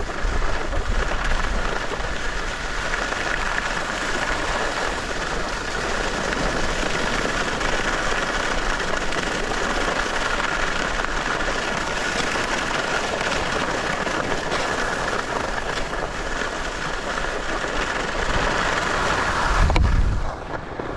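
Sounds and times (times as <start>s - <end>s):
skis sliding on snow: 0.0s - 20.9s
wind rushing over microphone: 12.8s - 20.9s.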